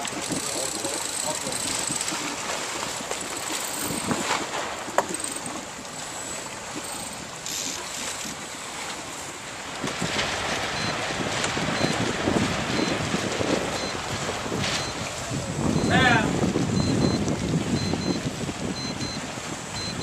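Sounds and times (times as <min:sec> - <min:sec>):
water washing against hull: 0:00.0 - 0:20.0
wind buffeting microphone: 0:03.7 - 0:04.5, 0:09.7 - 0:20.0.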